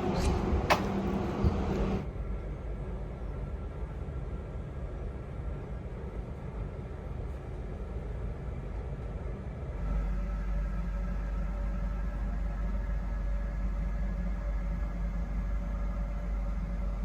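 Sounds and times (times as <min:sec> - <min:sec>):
train wheels rumbling: 0:00.0 - 0:10.0.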